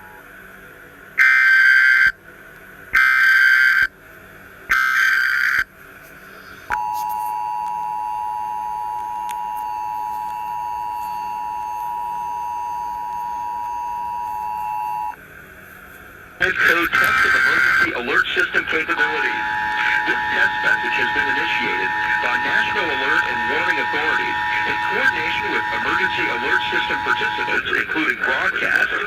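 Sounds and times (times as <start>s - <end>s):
shrill two-tone attention signal: 6.8s - 15.2s, 19.1s - 27.6s
digital data screech bursts: 16.5s - 27.8s.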